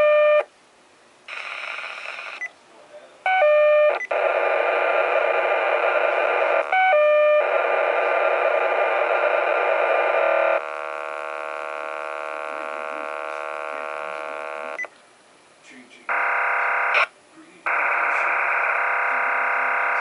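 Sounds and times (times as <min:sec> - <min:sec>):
harsh data buzz from scanner: 0:09.4 - 0:14.8.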